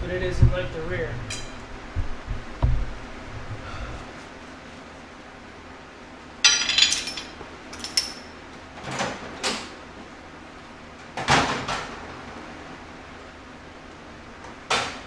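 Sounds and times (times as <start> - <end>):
metal tools clanking: 6.4 - 8.3.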